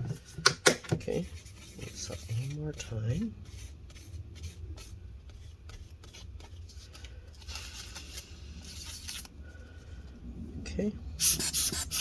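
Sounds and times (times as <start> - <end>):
steady low hum: 0.0 - 12.0
scratchy rubbing and wiping: 1.2 - 9.3, 11.2 - 12.0.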